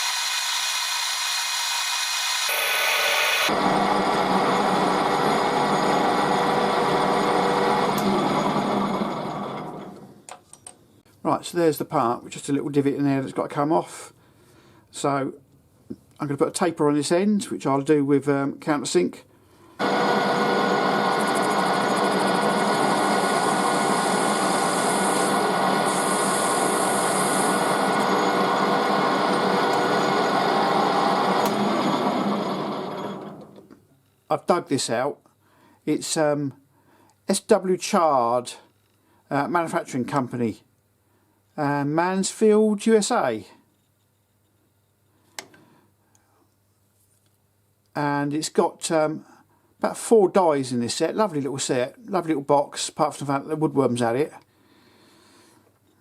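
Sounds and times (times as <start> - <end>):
metal lathe motor drone: 0.0 - 10.2, 19.8 - 33.6.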